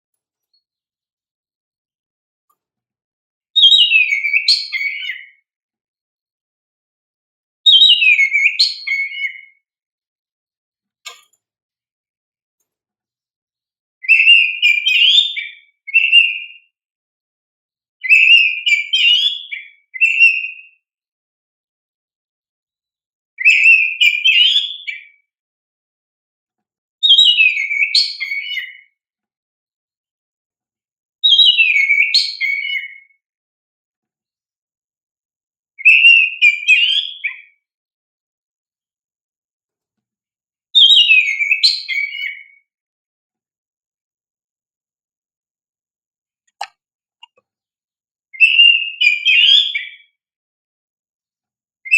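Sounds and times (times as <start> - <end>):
bird singing whistled phrases: 3.6 - 5.4, 7.6 - 9.6, 14.0 - 16.7, 18.0 - 20.7, 23.4 - 25.2, 27.0 - 29.0, 31.2 - 33.2, 35.8 - 37.6, 40.8 - 42.6, 48.4 - 50.2.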